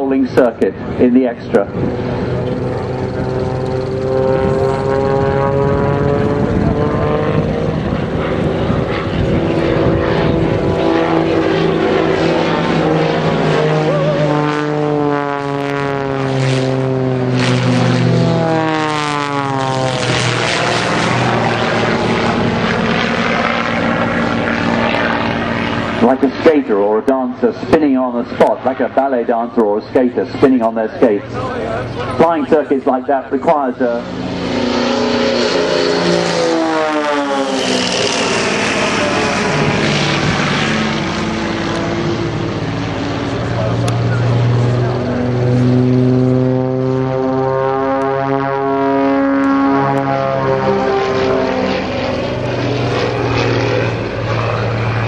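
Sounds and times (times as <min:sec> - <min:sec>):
propeller aircraft passing: 0:00.0 - 0:55.0.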